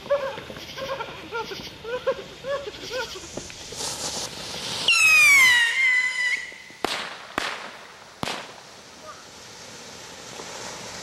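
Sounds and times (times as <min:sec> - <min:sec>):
whistling firework screeching: 0:00.0 - 0:11.0
firecracker bangs: 0:03.3 - 0:08.7.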